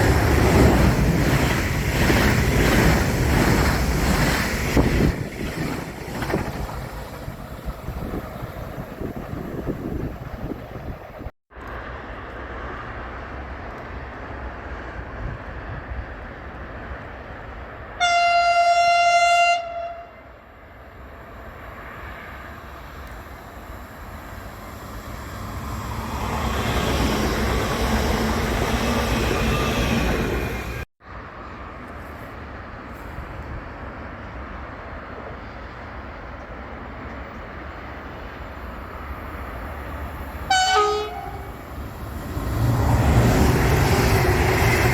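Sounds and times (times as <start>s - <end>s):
train passing: 0.0s - 44.9s
train horn: 18.0s - 20.4s, 40.5s - 41.7s.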